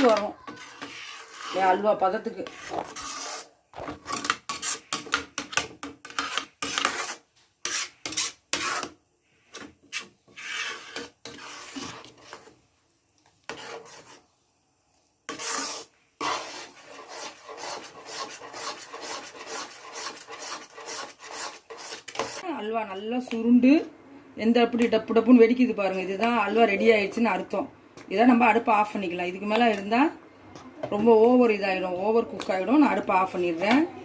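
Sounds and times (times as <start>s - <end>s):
spoon scraping a pan: 0.0s - 12.6s, 13.3s - 14.3s, 15.3s - 22.4s.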